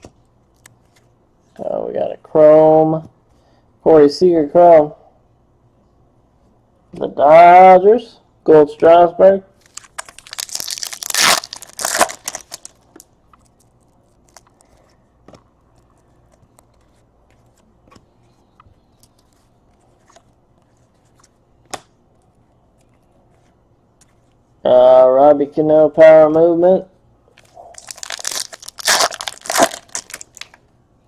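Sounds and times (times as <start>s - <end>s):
foil wrapper tearing and crinkling: 9.6s - 12.8s, 13.4s - 14.6s, 27.8s - 30.6s
cards rustling and ticking: 9.6s - 24.3s, 27.4s - 30.6s.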